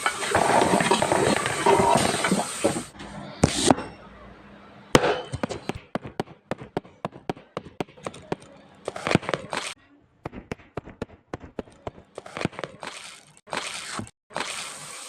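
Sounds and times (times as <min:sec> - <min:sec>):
mix of voices and noise: 0:02.9 - 0:10.3
sharp cracks: 0:05.0 - 0:14.7.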